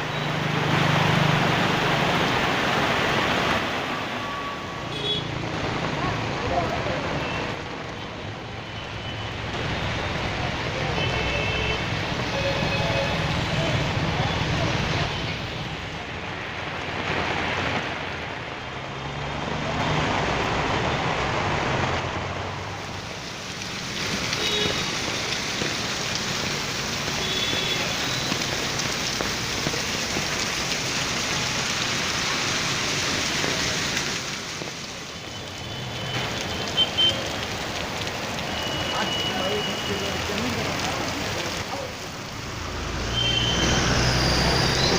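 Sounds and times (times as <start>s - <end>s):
rain falling: 0.0s - 44.9s.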